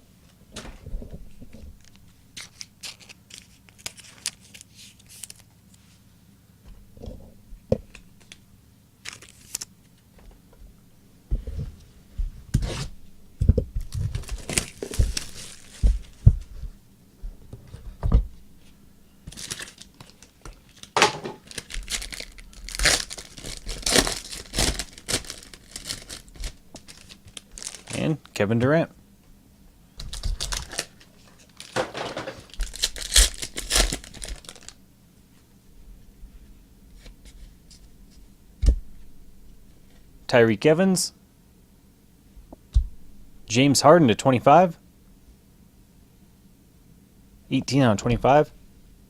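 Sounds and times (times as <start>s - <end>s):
wrappers tearing and crinkling: 1.8s - 5.5s, 9.0s - 9.7s, 13.8s - 16.2s, 19.3s - 28.1s, 30.1s - 34.8s.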